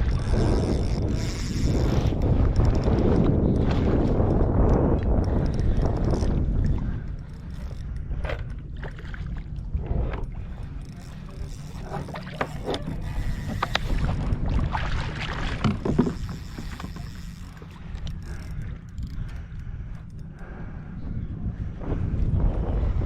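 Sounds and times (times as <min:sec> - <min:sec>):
low wind rumble on microphone: 0:00.0 - 0:23.0
water splashing around kayak: 0:00.0 - 0:23.0
clicks and knocks on hull: 0:01.8 - 0:19.4.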